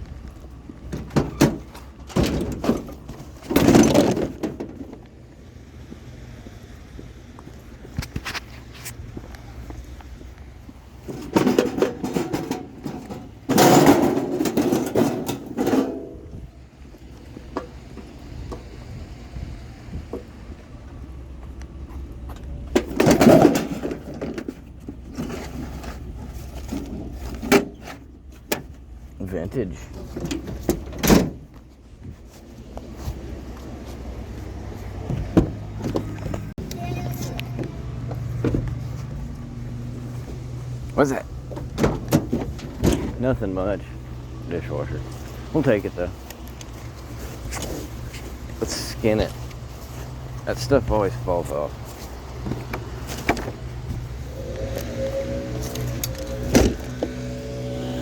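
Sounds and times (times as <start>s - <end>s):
vehicle engine low rumble: 0.0s - 58.0s
scrap metal clattering: 10.9s - 16.4s, 22.8s - 28.7s
loud clatter: 11.1s - 16.1s.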